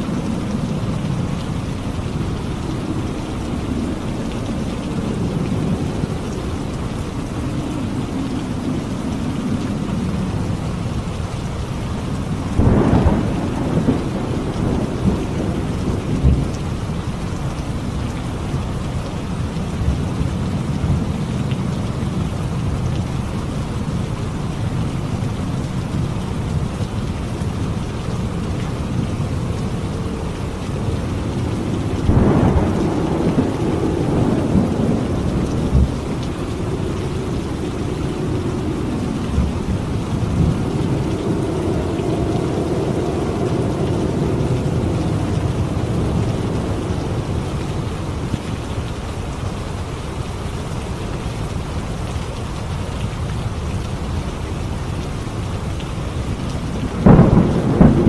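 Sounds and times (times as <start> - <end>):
heavy rain: 0.0 - 58.0
thunder claps: 12.6 - 16.5, 30.9 - 48.3, 56.9 - 58.0.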